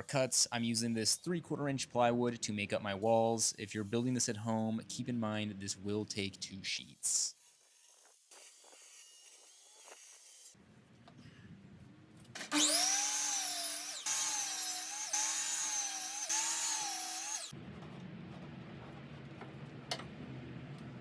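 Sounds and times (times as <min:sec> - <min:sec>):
power saw cutting plywood: 0:12.4 - 0:17.5.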